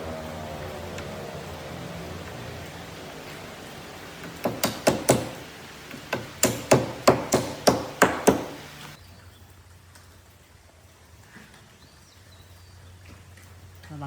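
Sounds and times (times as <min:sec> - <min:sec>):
hammering on wood: 0:04.2 - 0:08.7.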